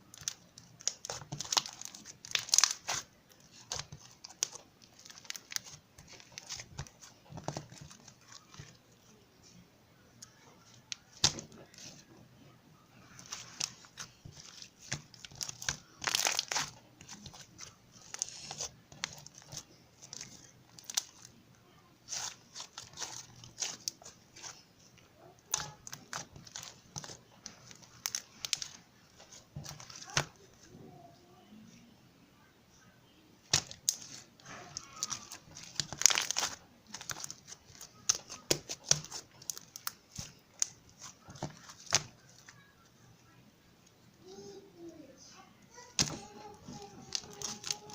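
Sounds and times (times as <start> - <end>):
slime squished by hand: 0.2 - 8.7, 13.2 - 21.3, 33.4 - 42.5.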